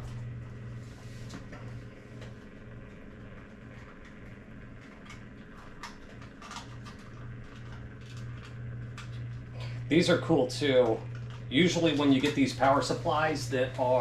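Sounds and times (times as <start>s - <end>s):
steady low hum: 0.0s - 14.0s
small plastic clicks and rustles: 4.8s - 9.2s.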